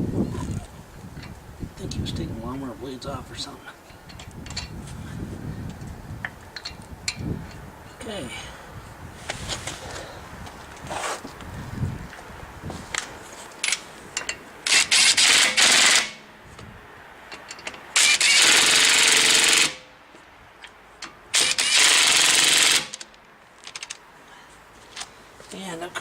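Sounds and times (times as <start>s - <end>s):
impact wrench hammering lug nuts: 14.2s - 16.2s, 17.3s - 19.9s, 21.0s - 23.1s.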